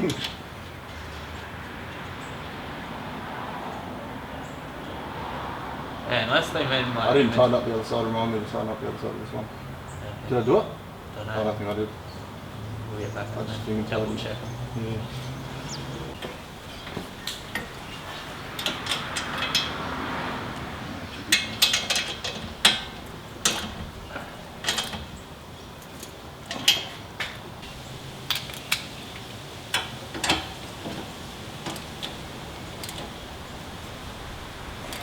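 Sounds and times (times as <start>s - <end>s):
metal hand tools clanking: 15.6s - 35.0s.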